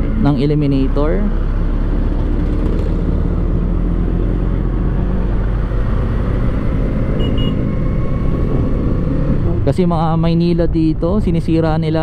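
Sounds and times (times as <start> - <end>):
road and wind noise: 0.0 - 12.0
short high beeps: 7.2 - 7.6.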